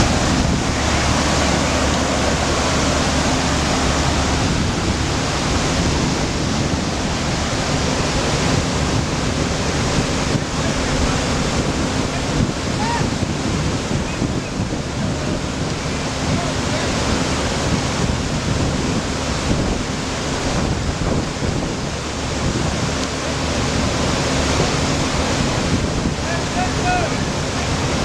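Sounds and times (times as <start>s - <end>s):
floodwater rushing: 0.0s - 28.0s.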